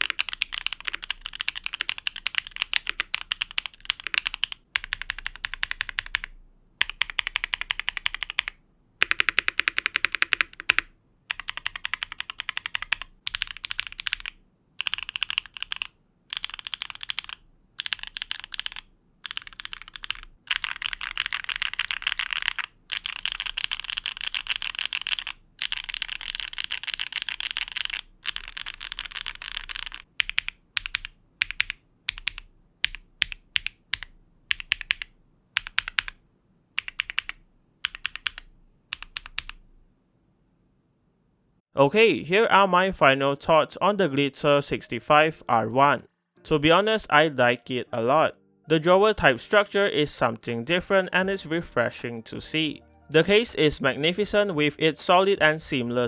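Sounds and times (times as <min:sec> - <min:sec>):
keyboard typing: 0:00.0 - 0:36.2, 0:36.8 - 0:39.7.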